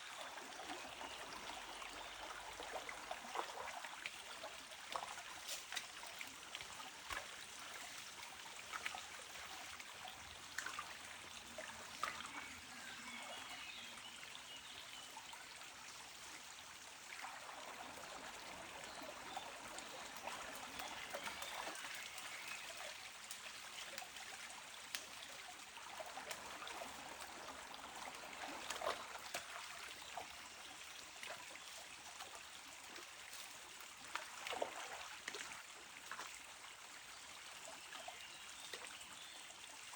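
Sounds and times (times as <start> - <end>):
water trickling and flowing: 0.0 - 39.9
small splashes: 32.9 - 36.4.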